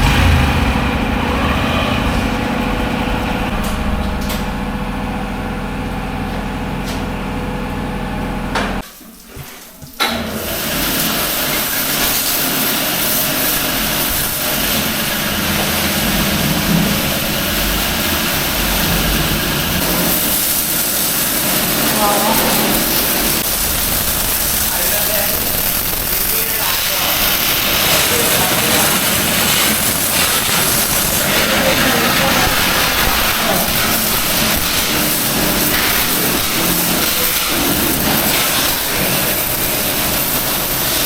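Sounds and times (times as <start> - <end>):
hiss: 10.5 - 41.0.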